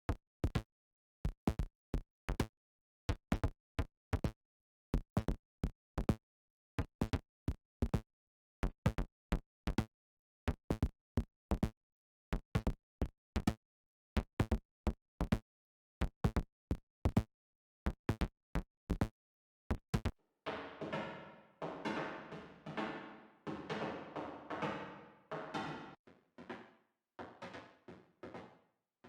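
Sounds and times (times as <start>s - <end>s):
ringing drum hit: 20.5s - 26.0s
dry synthesized knock hits: 20.5s - 28.5s.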